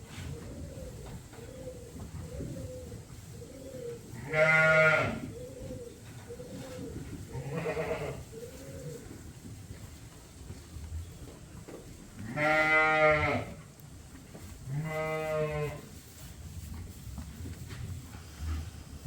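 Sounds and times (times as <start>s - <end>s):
sheep bleating: 12.3s - 13.5s.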